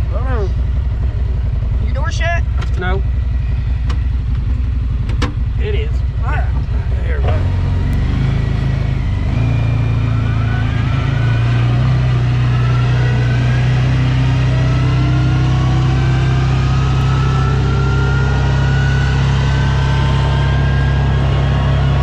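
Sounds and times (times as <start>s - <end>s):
car engine drone from inside cabin: 0.0s - 22.0s
faint whine rising in pitch: 5.7s - 22.0s.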